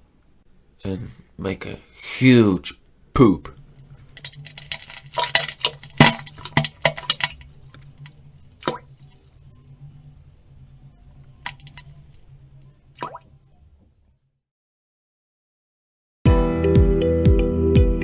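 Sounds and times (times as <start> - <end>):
drips: 3.8 - 9.9, 11.2 - 13.6
wet splats and plops: 4.2 - 9.2, 13.0 - 13.3.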